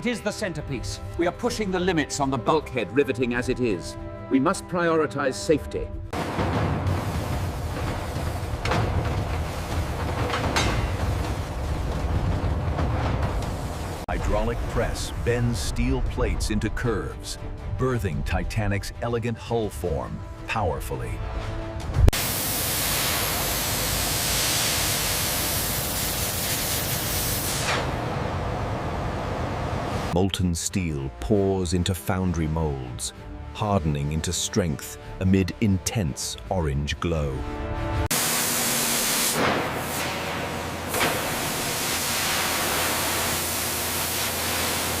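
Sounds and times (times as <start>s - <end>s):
molten steel pouring: 6.2s - 15.4s, 22.2s - 28.4s, 38.1s - 45.0s
steady hiss: 22.2s - 27.9s, 38.1s - 45.0s.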